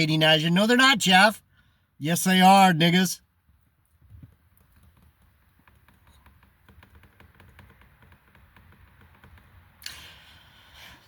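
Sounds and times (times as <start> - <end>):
faint light clicks and taps: 4.0 - 9.9.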